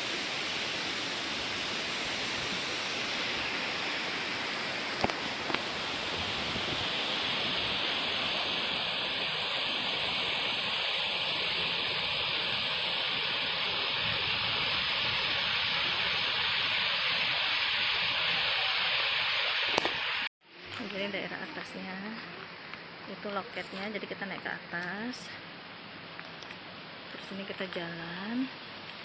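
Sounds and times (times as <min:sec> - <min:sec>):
waterfall rushing: 0:00.0 - 0:20.3.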